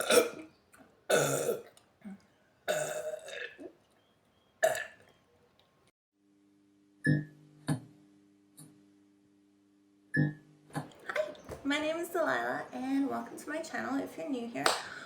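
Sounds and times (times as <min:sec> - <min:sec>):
woman burping: 0:00.0 - 0:00.5, 0:01.1 - 0:03.7, 0:04.6 - 0:05.0.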